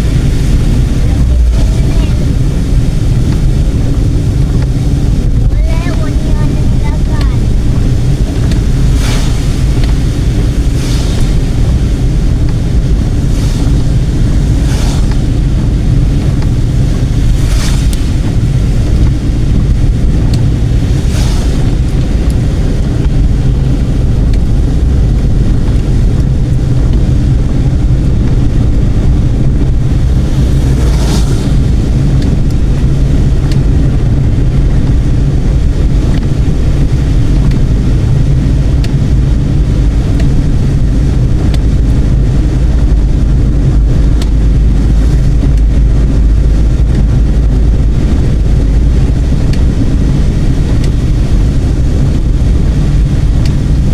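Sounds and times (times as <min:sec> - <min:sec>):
car engine and tyre rumble: 0:00.0 - 0:53.9
brief rushing sound: 0:08.8 - 0:15.6, 0:17.3 - 0:18.3, 0:20.9 - 0:22.1.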